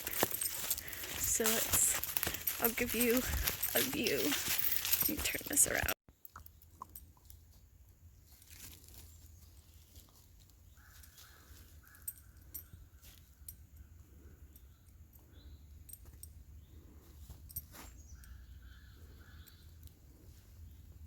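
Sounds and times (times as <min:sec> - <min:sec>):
dry leaves crackling and rustling: 0:00.0 - 0:06.0, 0:08.3 - 0:11.4.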